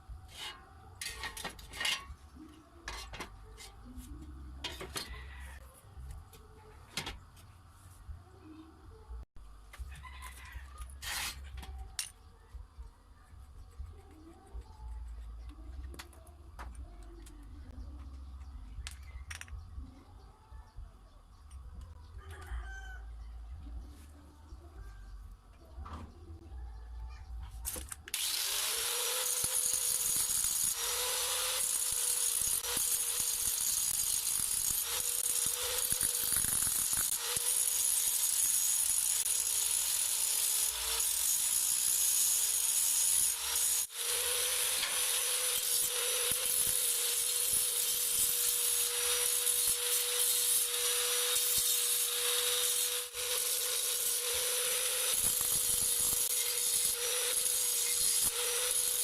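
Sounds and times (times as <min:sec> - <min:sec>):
tool scraping spinning work: 0:10.8 - 0:11.8, 0:28.1 - 0:59.0.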